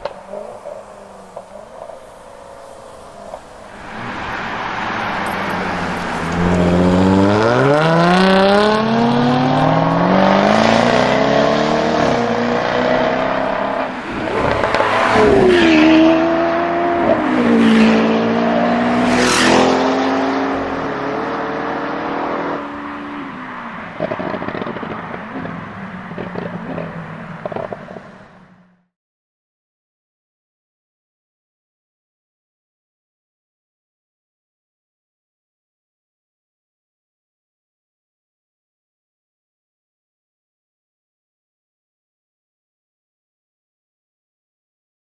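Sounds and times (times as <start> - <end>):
car engine accelerating hard: 0.0 - 28.8
sharp exhaust cracks: 23.6 - 28.6.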